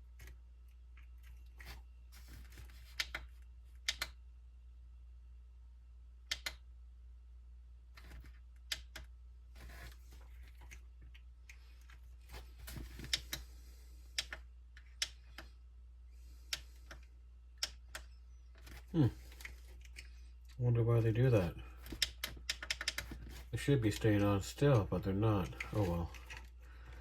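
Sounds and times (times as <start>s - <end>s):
low steady hum: 0.0s - 27.0s
plastic parts clicking: 21.8s - 24.8s.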